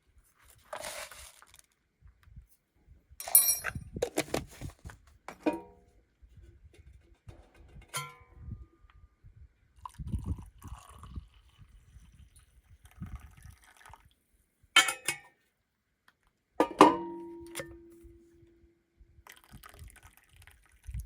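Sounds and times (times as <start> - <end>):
kitchenware clinks and knocks: 3.2 - 4.4, 5.3 - 5.8, 7.3 - 8.3, 14.8 - 15.3, 16.6 - 17.8.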